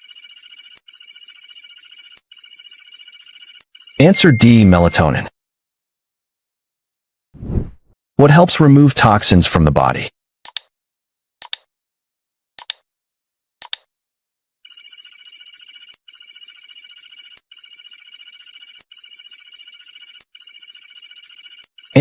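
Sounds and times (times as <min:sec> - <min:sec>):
electronic alarm bell ringing: 0:00.0 - 0:05.3, 0:14.6 - 0:22.0.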